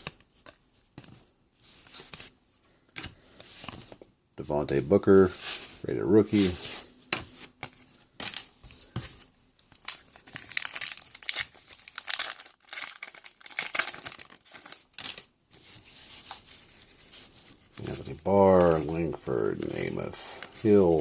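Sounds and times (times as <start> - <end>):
foil wrapper crinkling and tearing: 9.8 - 15.3.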